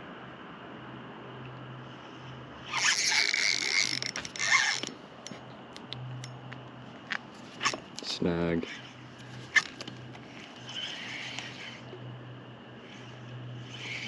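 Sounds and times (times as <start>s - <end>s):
fishing reel being cranked: 2.7s - 5.4s, 7.6s - 12.0s, 12.8s - 14.0s.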